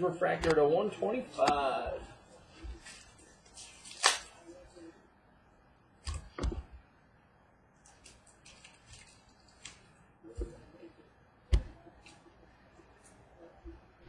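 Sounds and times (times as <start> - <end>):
cards sliding rustles: 2.4 - 4.4.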